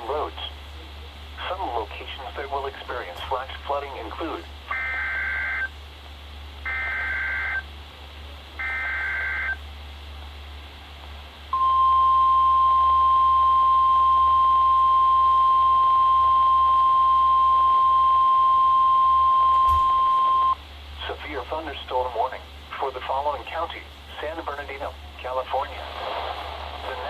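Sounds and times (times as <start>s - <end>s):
steady warning alarm tone: 11.6s - 20.6s.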